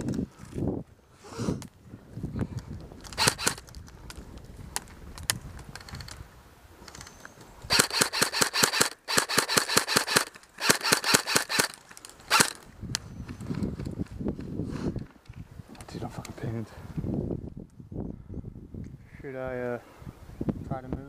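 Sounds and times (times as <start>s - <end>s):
airsoft guns firing: 7.7s - 12.6s.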